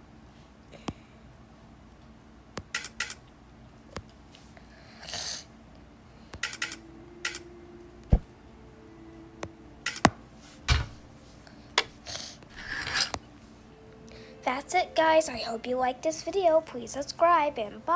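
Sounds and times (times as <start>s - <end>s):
small hard objects clicking and knocking: 12.5s - 13.2s.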